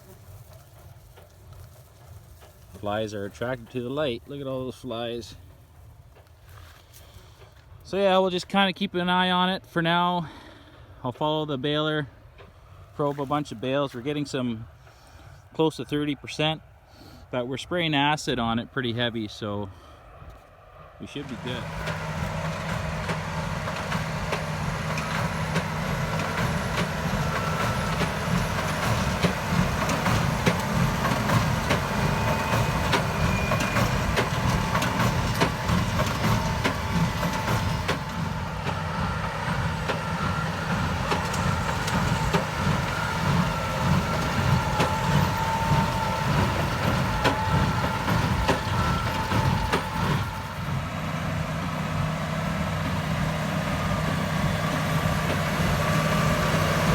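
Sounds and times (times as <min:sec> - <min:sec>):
tractor engine drone: 0:00.0 - 0:09.4, 0:21.0 - 0:56.9
baler machinery clattering: 0:21.2 - 0:56.9.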